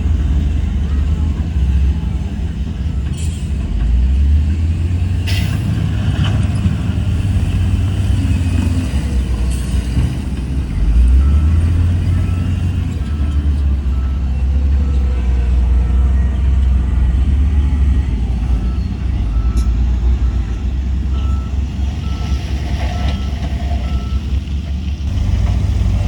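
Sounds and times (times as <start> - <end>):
diesel machine engine rumbling: 0.0 - 26.0
reversing alarm beeping: 10.7 - 24.3.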